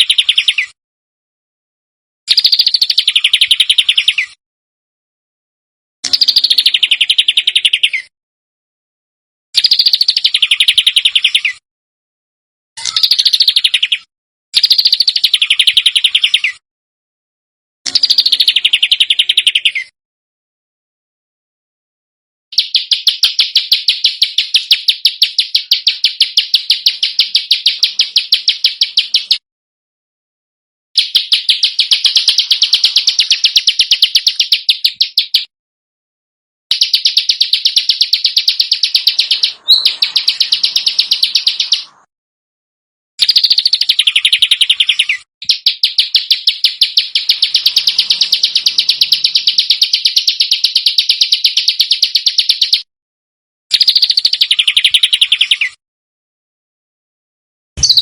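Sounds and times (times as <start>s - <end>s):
songbird rapid harsh call: 31.2s - 34.5s, 36.8s - 42.1s, 43.2s - 51.1s, 57.8s - 58.0s.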